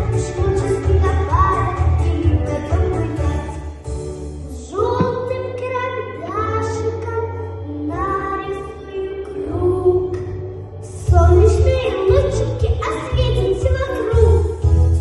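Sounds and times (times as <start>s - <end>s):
girl singing: 0.0s - 3.6s, 4.6s - 14.6s
musical backing track: 0.0s - 15.0s.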